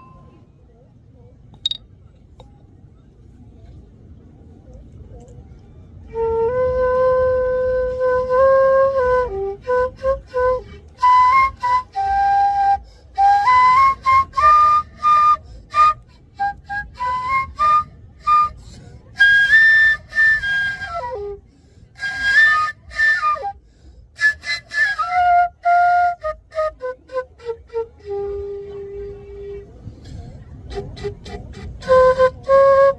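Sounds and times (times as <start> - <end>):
flute-like solo melody: 0.0 - 0.4, 6.0 - 21.4, 22.0 - 23.6, 24.2 - 29.6, 30.7 - 32.9.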